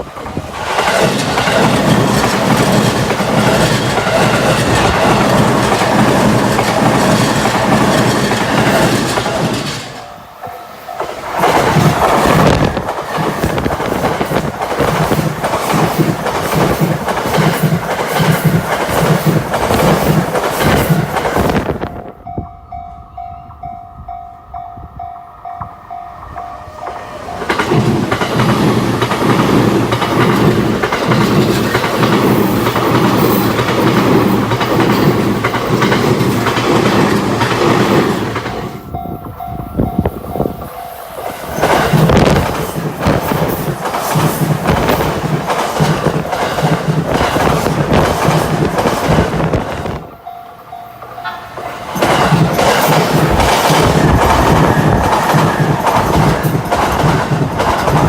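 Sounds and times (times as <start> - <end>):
train passing: 0.0 - 58.0
wheels clacking over rail joints: 0.2 - 21.9, 26.8 - 39.5, 40.6 - 50.0, 50.6 - 58.0
crossing alarm bell ringing: 8.8 - 12.7, 21.8 - 28.2, 37.9 - 42.3, 50.1 - 57.1.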